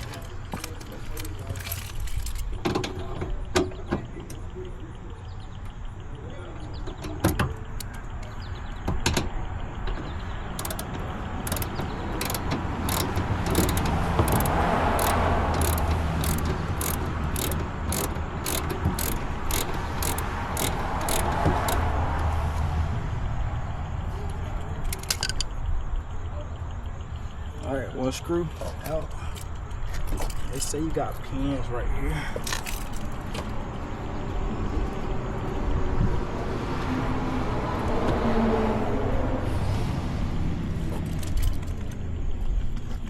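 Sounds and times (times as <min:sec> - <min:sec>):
ratchet wrench clicking: 0:00.0 - 0:02.5, 0:10.5 - 0:22.0, 0:24.9 - 0:25.5, 0:30.1 - 0:30.7, 0:32.4 - 0:33.2.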